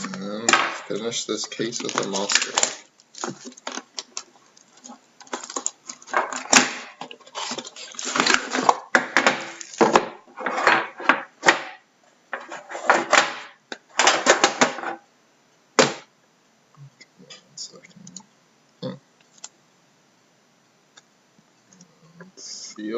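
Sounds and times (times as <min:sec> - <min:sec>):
wrapping rustling and crinkling: 0:00.0 - 0:11.1.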